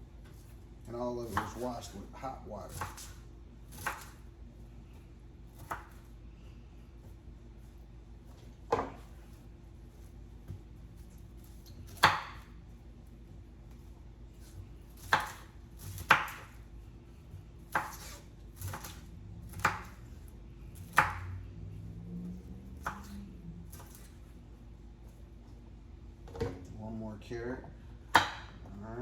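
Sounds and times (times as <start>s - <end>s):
knife chopping on cutting board: 1.2s - 1.9s, 2.7s - 4.3s, 5.5s - 6.1s, 8.4s - 9.3s, 10.0s - 12.6s, 13.7s - 21.4s, 22.7s - 24.3s, 28.0s - 28.7s.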